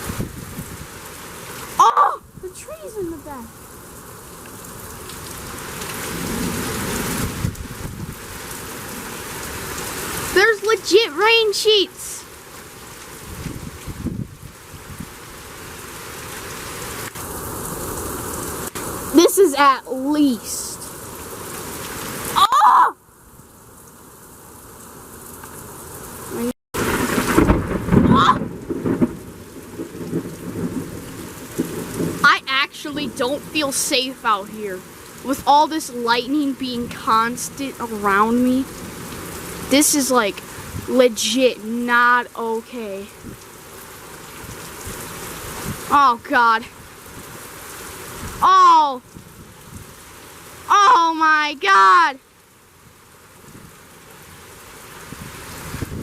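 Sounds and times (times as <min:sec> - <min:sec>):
heavy wind-driven rain: 0:00.0 - 0:56.0
thunder rumbling: 0:06.1 - 0:09.0, 0:26.4 - 0:34.3.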